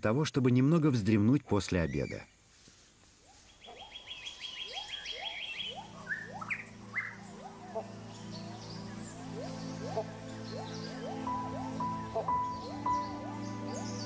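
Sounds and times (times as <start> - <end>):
forest birds calling: 1.7 - 14.0
low steady drone: 5.2 - 14.0.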